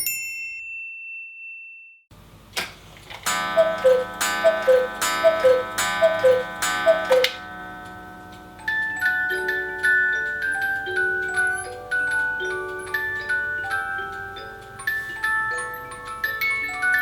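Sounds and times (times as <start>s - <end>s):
cuckoo clock calls: 3.3s - 7.5s, 8.6s - 17.0s
clock ticking: 3.3s - 8.4s
music box melody: 3.3s - 17.0s.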